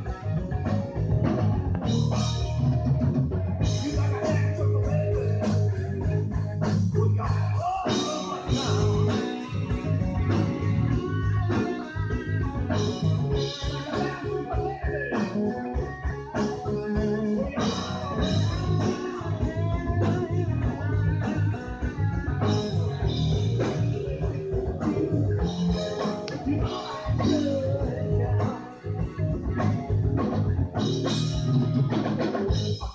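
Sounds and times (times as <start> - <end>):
blues-rock band playing: 0.0 - 32.9
electric guitar: 0.0 - 32.9.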